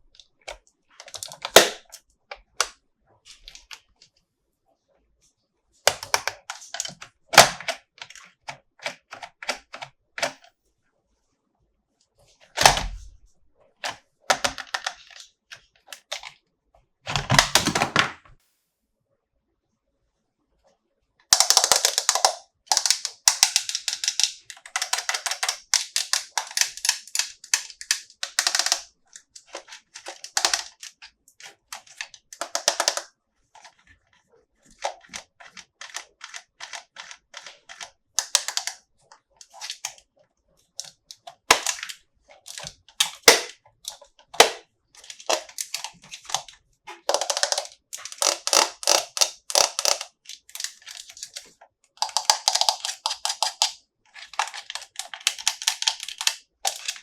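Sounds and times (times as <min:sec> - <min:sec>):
plastic packaging crinkling: 0:40.8 - 0:57.0.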